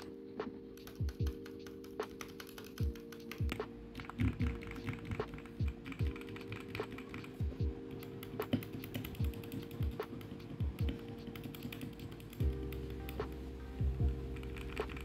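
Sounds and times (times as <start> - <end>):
background music: 0.0 - 15.0
mechanical keyboard typing: 0.8 - 12.9, 14.3 - 15.0.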